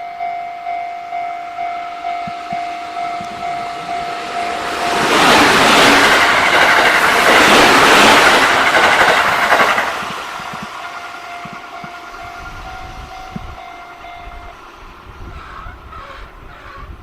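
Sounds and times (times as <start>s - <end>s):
level-crossing bell two-tone ding: 0.0s - 5.0s, 10.8s - 14.6s
electric train passing: 0.0s - 17.0s.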